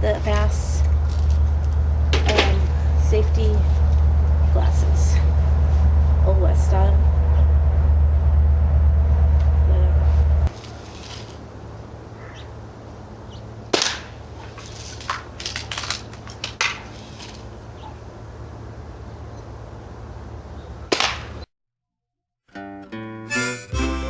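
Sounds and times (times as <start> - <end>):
steady low hum: 0.0 - 10.5.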